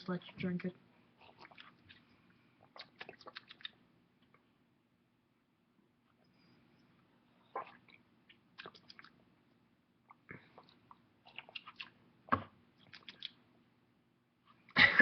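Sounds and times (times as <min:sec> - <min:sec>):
lip smacks and clicks: 0:01.2 - 0:04.4, 0:07.6 - 0:09.2, 0:10.1 - 0:13.4.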